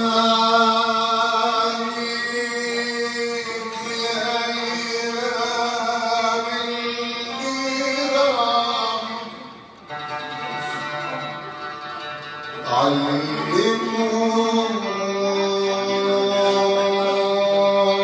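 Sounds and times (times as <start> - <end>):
man singing: 0.0 - 9.6, 12.6 - 18.0.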